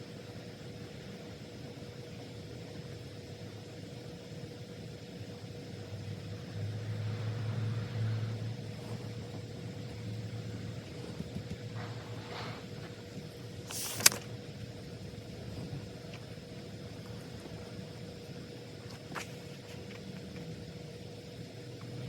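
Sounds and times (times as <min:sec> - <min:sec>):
faint constant hum: 0:00.0 - 0:22.0.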